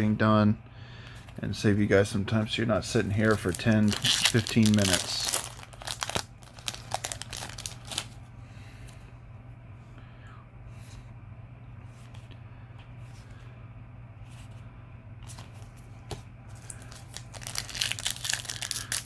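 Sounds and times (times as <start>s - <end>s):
steady low hum: 0.0s - 19.0s
foil wrappers crinkling: 2.9s - 8.2s, 16.6s - 19.0s.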